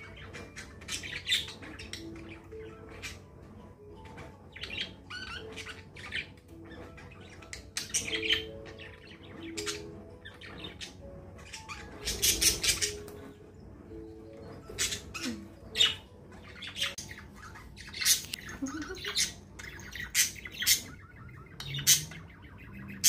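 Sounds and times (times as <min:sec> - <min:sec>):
budgies chirping and squawking: 0:00.0 - 0:23.0.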